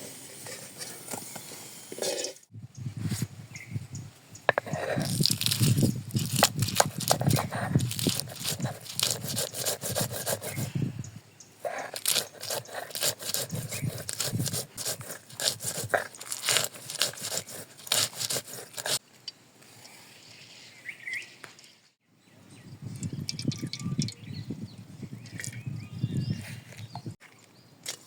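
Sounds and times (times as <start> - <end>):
utensil scraping cookware: 11.7 - 19.0.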